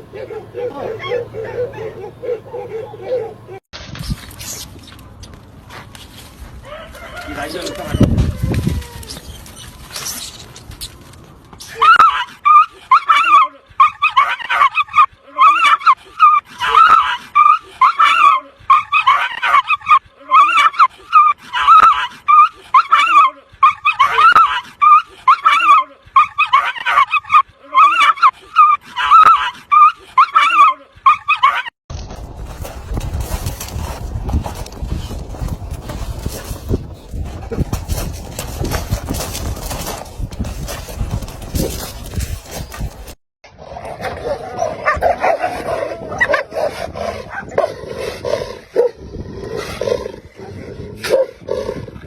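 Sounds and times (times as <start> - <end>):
dogs yelping and whining: 0.0 - 3.6, 11.6 - 31.8, 44.0 - 47.7.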